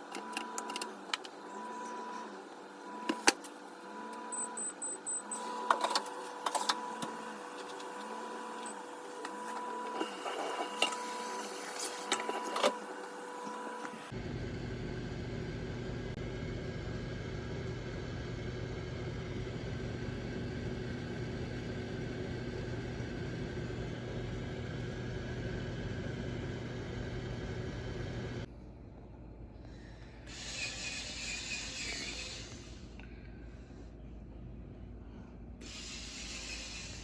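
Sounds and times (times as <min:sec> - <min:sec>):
low appliance hum: 0:00.0 - 0:37.0
electronic tones: 0:03.9 - 0:06.0.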